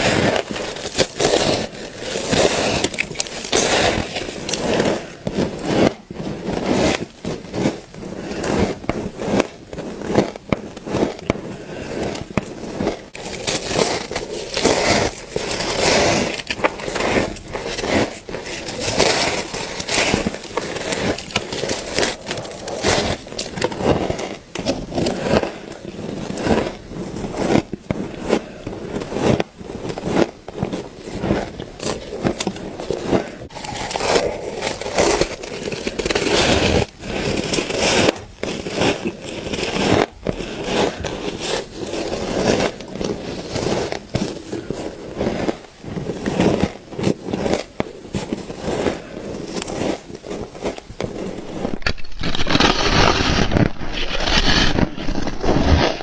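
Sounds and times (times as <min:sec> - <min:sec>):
frost being chewed: 0:33.5 - 0:35.9.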